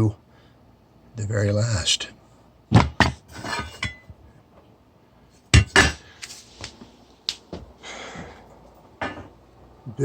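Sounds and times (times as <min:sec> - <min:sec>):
metal scrape: 0:03.3 - 0:04.0.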